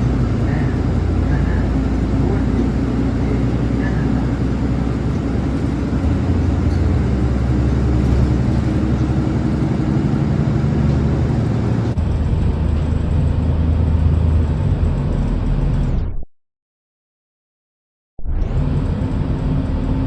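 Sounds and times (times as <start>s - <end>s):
car road and engine noise: 0.0s - 16.1s, 18.3s - 20.0s.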